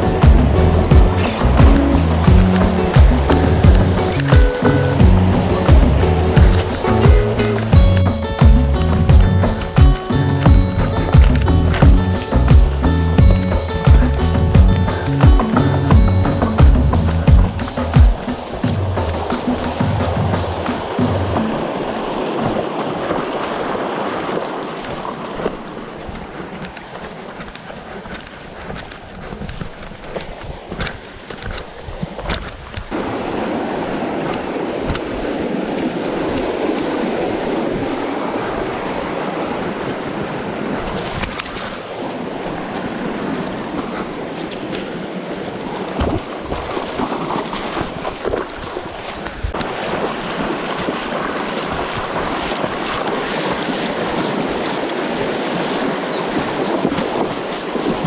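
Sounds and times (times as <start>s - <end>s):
river water rushing: 0.0s - 58.0s
sharp knocks: 0.2s - 21.6s.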